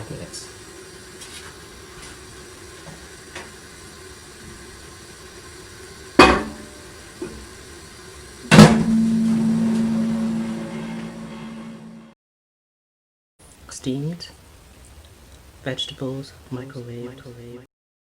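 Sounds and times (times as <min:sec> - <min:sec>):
microwave oven humming: 0:00.0 - 0:12.2
microwave door banging shut: 0:08.5 - 0:09.8.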